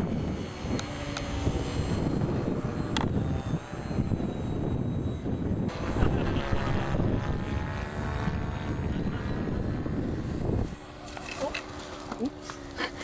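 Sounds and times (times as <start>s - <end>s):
electric motor and propeller whine: 0.0s - 13.0s
wind buffeting microphone: 0.0s - 13.0s.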